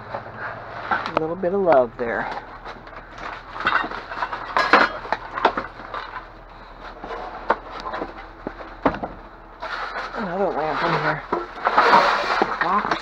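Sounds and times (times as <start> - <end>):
debris knocking and clattering: 2.2 - 13.0.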